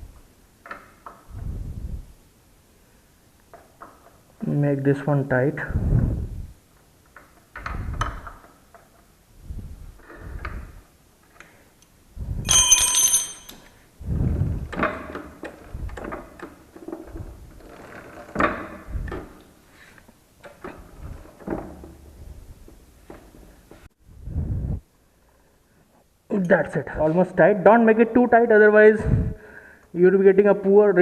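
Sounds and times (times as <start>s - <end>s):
bright metallic clink: 12.4s - 13.8s
metal tools clinking: 12.4s - 13.8s.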